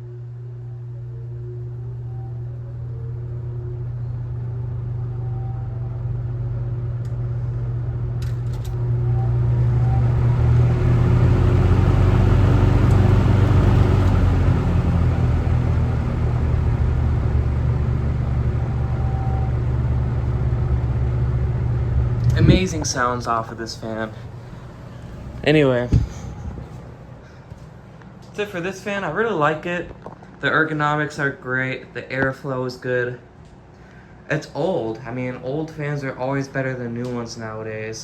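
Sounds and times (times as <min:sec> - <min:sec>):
box fan running: 0:00.0 - 0:38.0
fan clicks: 0:08.2 - 0:08.9, 0:09.6 - 0:17.2, 0:22.2 - 0:28.5, 0:36.9 - 0:37.4.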